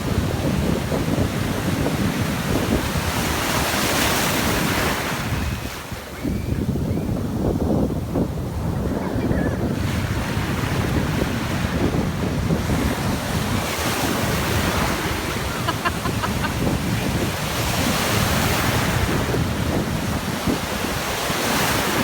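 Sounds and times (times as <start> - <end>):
wind buffeting microphone: 0.0 - 22.0
ocean surf breaking: 9.8 - 22.0.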